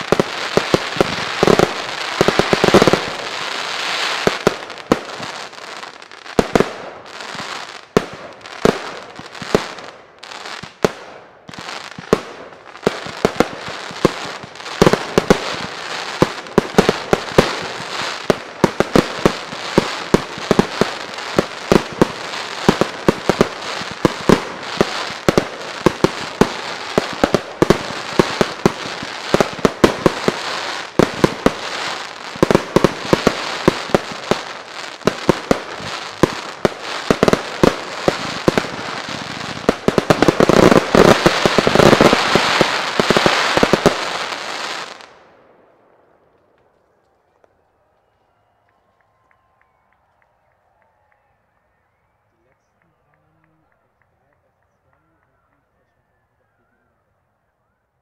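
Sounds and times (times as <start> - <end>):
firework bangs: 0.0 - 10.0, 10.6 - 45.4
firework crackling: 0.0 - 46.7.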